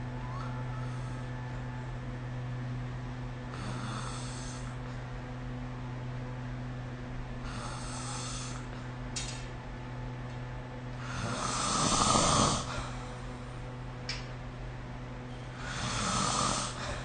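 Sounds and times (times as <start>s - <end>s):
steady low hum: 0.0s - 17.0s
person snoring: 3.5s - 4.8s, 7.4s - 8.7s, 11.0s - 13.0s, 15.6s - 17.0s.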